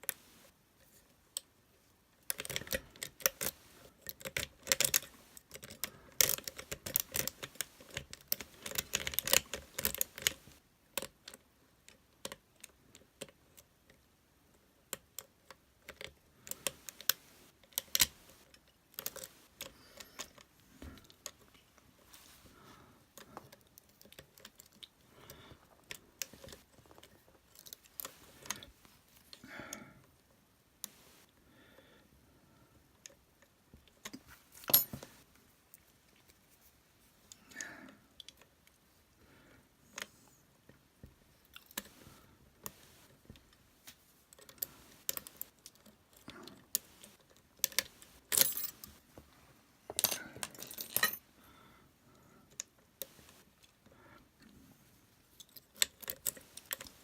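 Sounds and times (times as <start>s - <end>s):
lock picks clicking and scraping: 2.2s - 14.1s, 14.8s - 29.4s, 33.0s - 35.3s, 41.4s - 49.0s, 49.9s - 51.3s, 52.5s - 53.8s, 55.3s - 57.0s.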